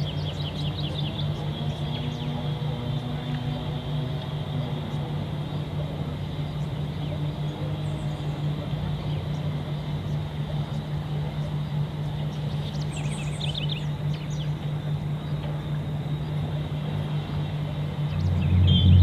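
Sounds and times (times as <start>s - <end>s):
engine drone: 0.0s - 19.0s
bird chirps: 11.4s - 15.4s, 17.2s - 19.0s.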